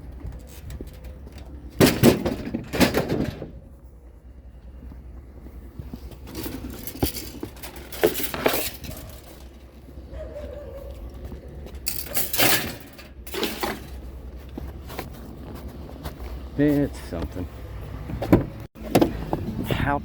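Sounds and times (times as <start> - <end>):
metal pieces clattering: 6.3 - 9.7, 11.8 - 14.0.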